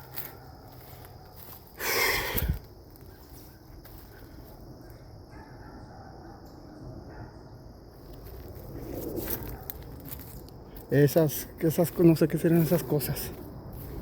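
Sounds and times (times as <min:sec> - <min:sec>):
footsteps through undergrowth: 0:00.0 - 0:05.0, 0:08.0 - 0:14.0.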